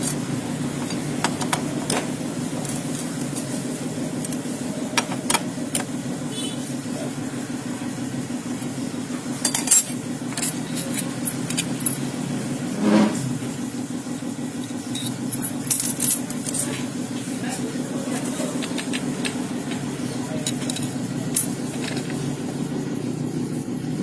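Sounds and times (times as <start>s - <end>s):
low mechanical hum: 0.0s - 24.0s
metal tools clinking and tapping: 9.4s - 12.1s, 14.6s - 16.8s, 18.1s - 22.3s.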